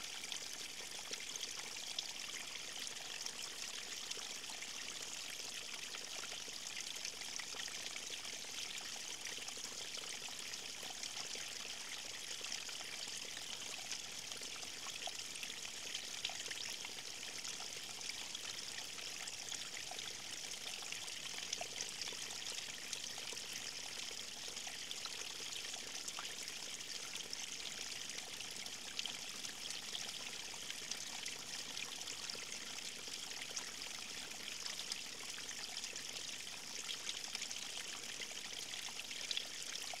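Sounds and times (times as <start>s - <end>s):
stream water over stones: 0.0s - 40.0s.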